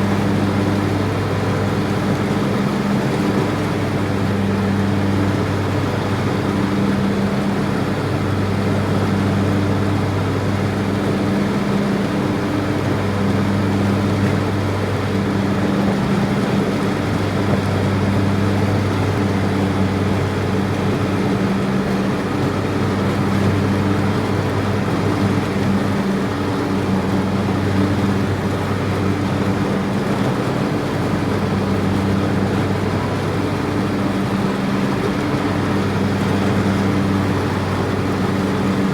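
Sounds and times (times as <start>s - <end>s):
loud low mechanical hum: 0.0s - 38.9s.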